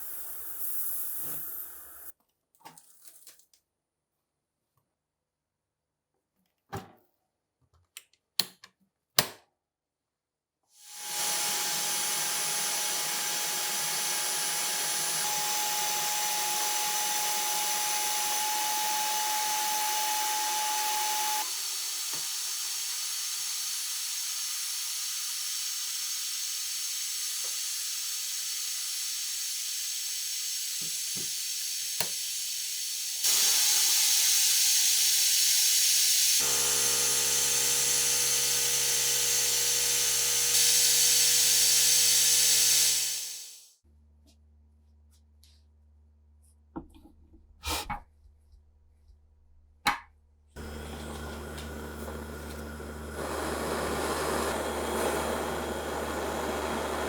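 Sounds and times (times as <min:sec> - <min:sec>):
workshop tool hissing: 0:00.0 - 0:02.1, 0:10.8 - 0:43.7, 0:50.6 - 0:57.0.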